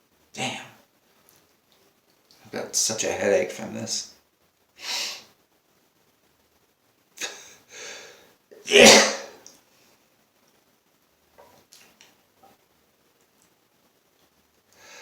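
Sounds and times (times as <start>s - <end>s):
man sneezing: 8.6s - 9.4s.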